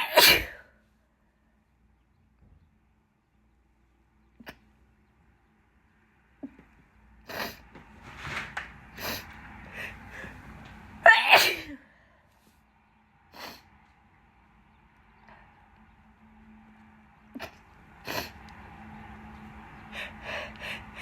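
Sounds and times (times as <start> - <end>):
woman sneezing loudly: 0.0 - 0.6, 11.0 - 11.8
catching breaths: 9.0 - 10.6, 19.8 - 21.0.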